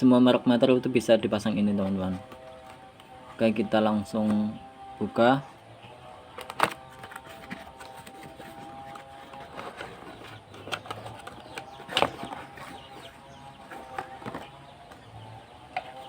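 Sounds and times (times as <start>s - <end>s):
packaging clicks and rustles: 6.3s - 15.0s.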